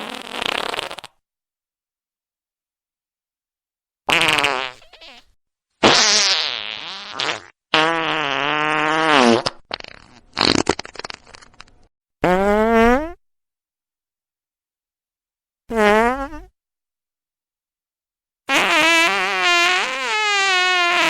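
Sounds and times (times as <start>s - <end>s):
farts: 0.0s - 1.2s, 4.1s - 13.2s, 15.7s - 16.6s, 18.5s - 21.0s.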